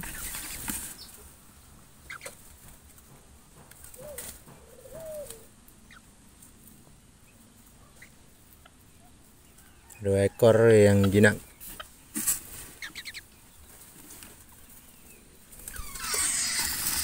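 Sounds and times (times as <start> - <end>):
rustle of movement: 0.0 - 10.0, 10.8 - 17.0
low wavering bird calls: 3.9 - 6.1, 12.8 - 13.4, 14.8 - 17.0
thin high bird chirps: 14.6 - 17.0.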